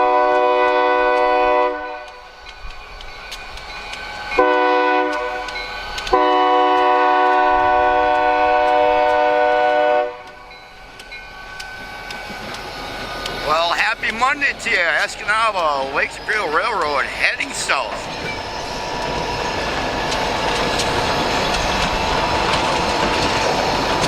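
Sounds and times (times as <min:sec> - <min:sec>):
locomotive air horn chord: 0:00.0 - 0:02.3, 0:04.4 - 0:05.5, 0:06.1 - 0:10.4.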